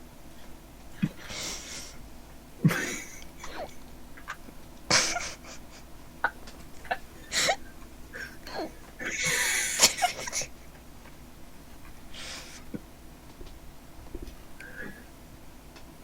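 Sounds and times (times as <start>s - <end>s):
person wheezing laughter: 2.6s - 10.5s.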